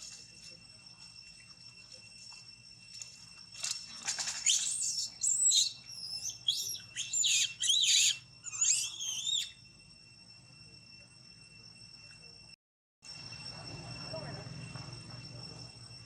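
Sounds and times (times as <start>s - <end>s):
baby monkey squealing: 4.4s - 9.6s.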